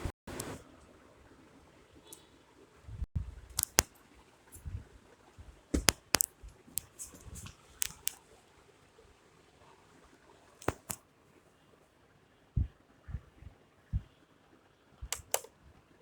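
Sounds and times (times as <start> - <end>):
plastic fan parts clicking: 3.5 - 3.9, 5.8 - 8.2, 10.6 - 11.0, 15.0 - 15.5
dull thuds: 5.4 - 6.1.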